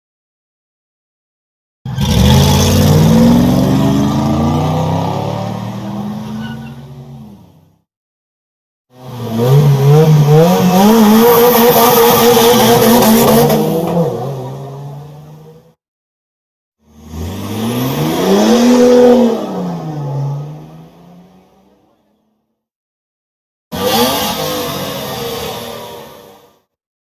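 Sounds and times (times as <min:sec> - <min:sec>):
car engine accelerating: 0:01.9 - 0:07.6.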